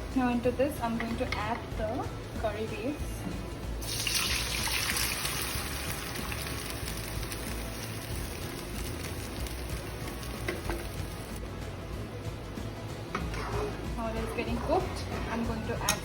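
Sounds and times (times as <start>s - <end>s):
curry sizzling in hot oil: 3.8s - 11.4s.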